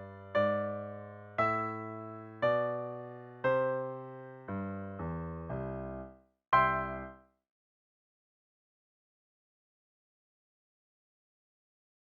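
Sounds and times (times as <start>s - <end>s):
piano block chords: 0.0s - 7.2s.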